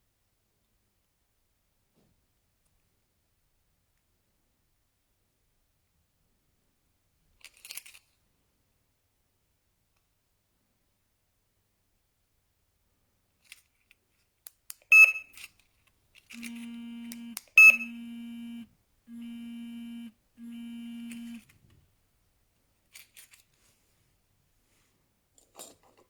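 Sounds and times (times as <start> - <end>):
alarm buzzing tones: 14.9 - 15.2, 16.4 - 21.4
alarm unit sharp beep: 14.9 - 15.3, 16.4 - 18.6.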